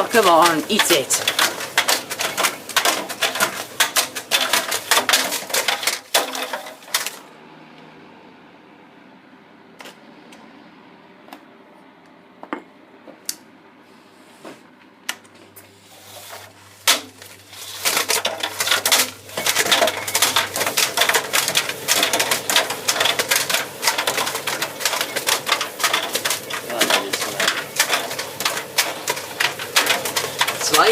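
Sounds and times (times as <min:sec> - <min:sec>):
objects rattling in tumble dryer: 0:00.0 - 0:07.3, 0:15.2 - 0:30.9.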